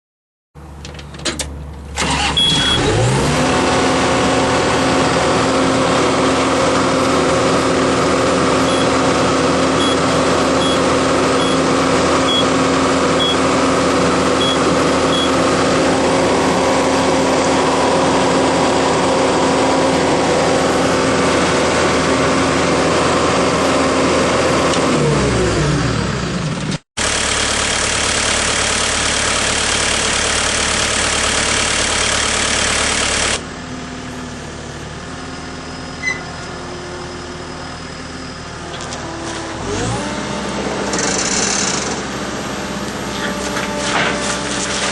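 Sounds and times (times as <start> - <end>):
diesel engine revving: 1.6 - 44.9
short high beeps: 2.3 - 2.9, 8.7 - 8.9, 9.8 - 10.0, 10.6 - 11.6, 14.4 - 15.4.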